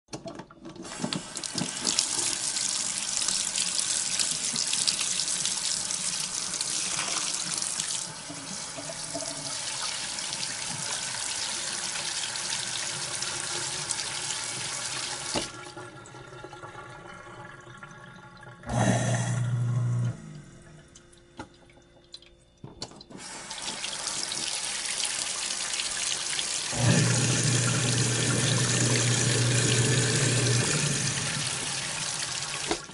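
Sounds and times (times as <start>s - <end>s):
tap water running into sink: 0.1s - 32.9s
low steady hum: 16.8s - 23.2s.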